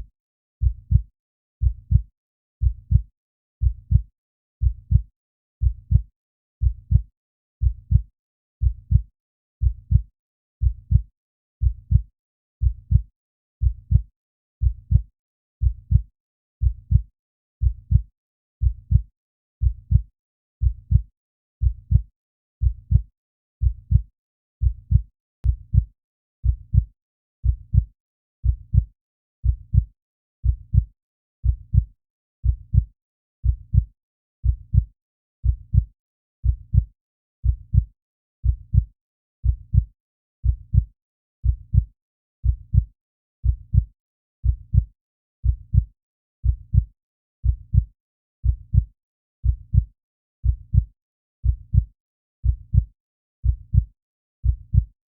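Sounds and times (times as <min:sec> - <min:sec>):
heartbeat: 0:00.6 - 0:03.0, 0:03.6 - 0:04.0, 0:04.6 - 0:05.0, 0:05.6 - 0:06.0, 0:06.6 - 0:07.0, 0:07.6 - 0:10.0, 0:10.6 - 0:11.0, 0:11.6 - 0:12.0, 0:12.6 - 0:13.0, 0:13.6 - 0:14.0, 0:14.6 - 0:15.0, 0:15.6 - 0:16.0, 0:16.6 - 0:17.0, 0:17.6 - 0:18.0, 0:18.6 - 0:19.0, 0:19.6 - 0:20.0, 0:20.6 - 0:21.0, 0:21.6 - 0:22.0, 0:22.6 - 0:23.0, 0:23.6 - 0:24.0, 0:24.6 - 0:55.0.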